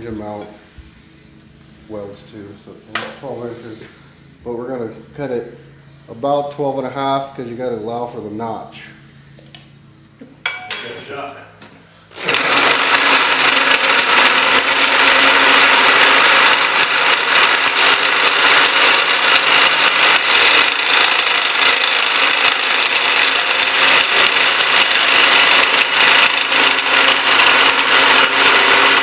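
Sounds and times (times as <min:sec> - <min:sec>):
power tool whining: 0:12.0 - 0:29.0
harsh cutting noise on steel: 0:12.1 - 0:29.0.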